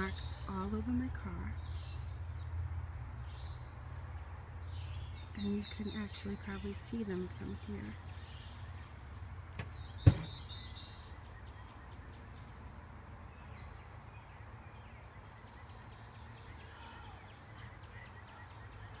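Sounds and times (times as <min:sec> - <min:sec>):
small birds chirping: 0:00.0 - 0:19.0
sharp knock: 0:09.6 - 0:10.4.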